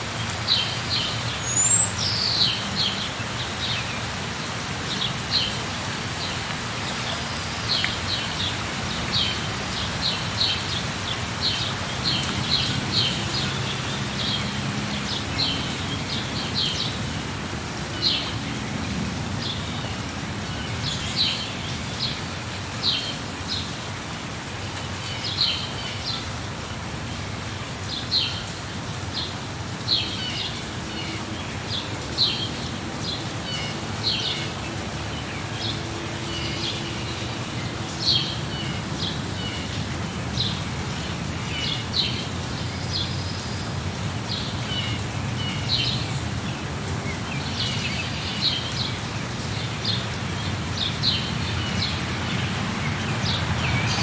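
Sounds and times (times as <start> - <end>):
rain hissing: 0.0 - 54.0
birds chirping: 0.2 - 4.2.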